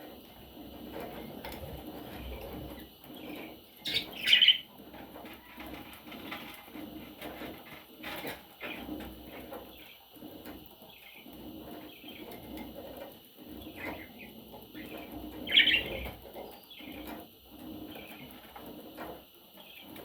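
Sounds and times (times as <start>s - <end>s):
budgerigars calling: 3.8s - 4.6s, 14.8s - 16.1s.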